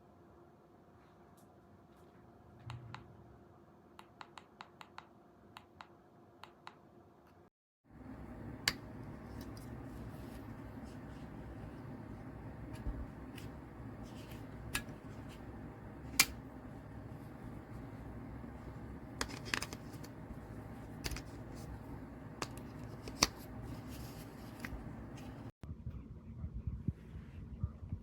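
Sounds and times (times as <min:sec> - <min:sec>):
steady low hum: 0:07.9 - 0:28.0.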